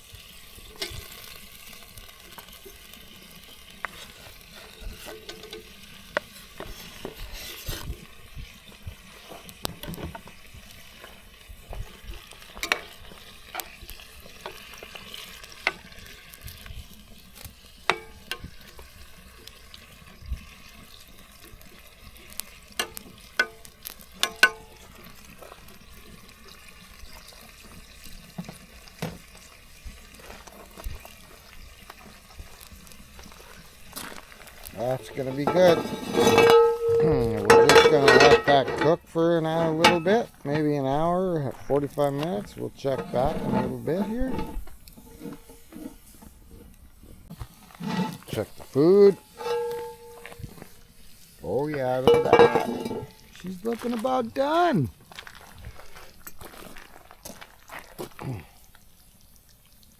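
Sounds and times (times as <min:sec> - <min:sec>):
food sizzling in a pan: 0:00.0 - 0:59.9
utensil scraping and clinking pan: 0:00.5 - 0:16.8, 0:17.4 - 0:19.6, 0:22.2 - 0:25.9, 0:34.0 - 0:46.3, 0:47.6 - 0:54.0.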